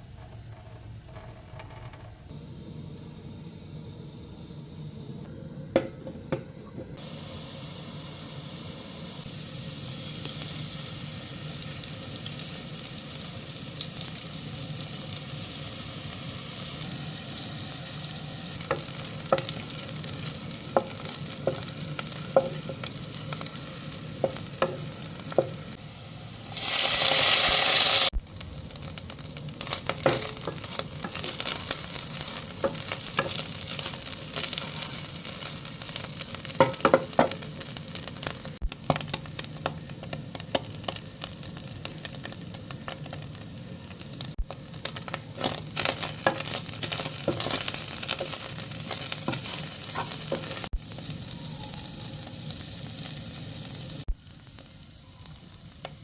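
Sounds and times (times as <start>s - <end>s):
loud hiss: 7.0s - 10.7s
food sizzling in a pan: 7.0s - 56.0s.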